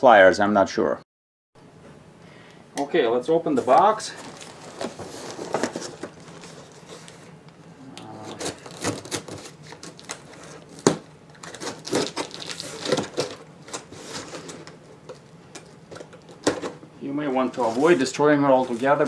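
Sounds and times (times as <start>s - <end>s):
cardboard box scraping and rustling: 3.6s - 7.3s, 8.2s - 14.7s, 17.5s - 19.0s.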